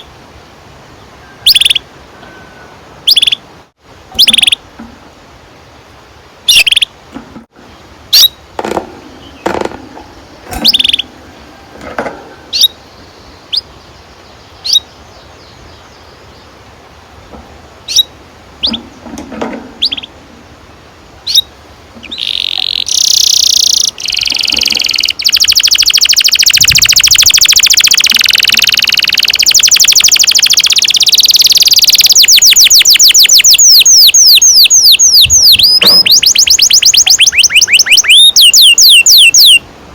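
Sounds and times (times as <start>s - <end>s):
canary singing rolling trills: 1.0s - 3.5s, 4.1s - 4.7s, 6.4s - 7.0s, 7.6s - 39.7s
canary chirping: 1.4s - 1.8s, 3.0s - 3.4s, 4.2s - 4.6s, 6.5s - 6.9s, 10.5s - 11.1s, 12.5s - 12.8s, 14.6s - 15.6s, 17.8s - 18.8s, 19.8s - 20.1s, 21.2s - 39.6s.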